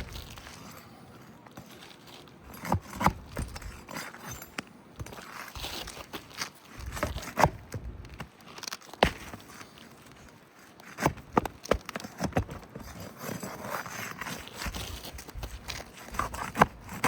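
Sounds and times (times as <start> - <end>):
scraping of shingle nails: 0.0 - 17.0
sharp knocks on roof shingle: 9.0 - 9.5.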